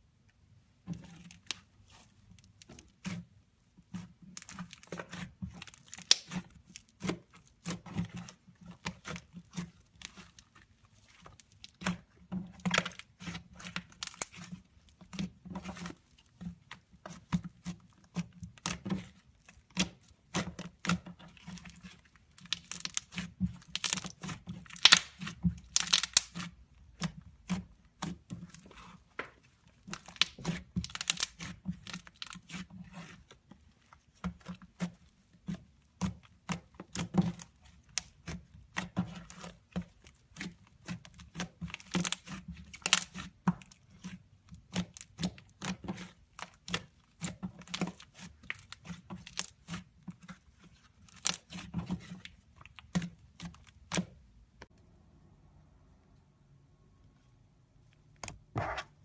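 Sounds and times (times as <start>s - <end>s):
slime crackling and popping: 4.4s - 8.2s, 17.2s - 28.9s, 29.8s - 32.7s, 35.4s - 44.1s, 51.0s - 54.1s.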